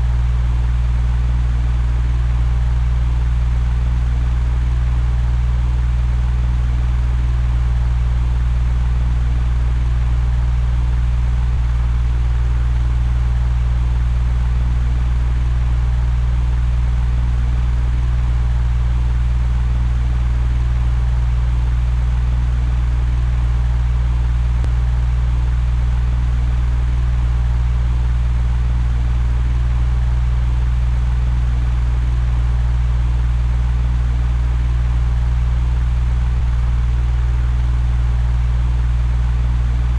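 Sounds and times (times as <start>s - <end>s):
electric fan running: 0.0s - 0.8s.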